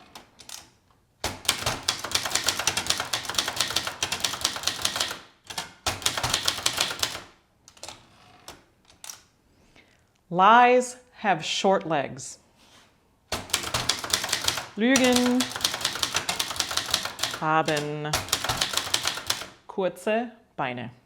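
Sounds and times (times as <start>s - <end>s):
manual typewriter typing: 0.0s - 9.3s, 13.3s - 19.6s.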